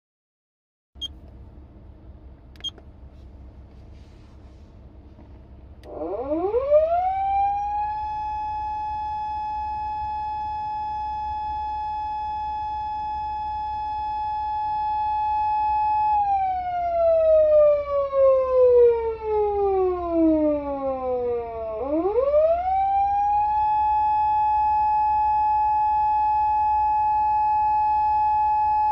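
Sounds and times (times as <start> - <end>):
electronic siren wail: 5.8 - 28.9.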